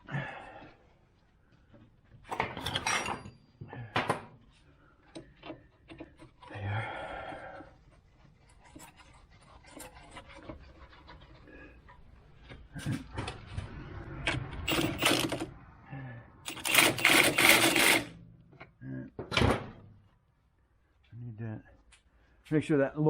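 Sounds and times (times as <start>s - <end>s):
tools and metal parts knocking: 14.6s - 15.5s, 16.5s - 18.1s.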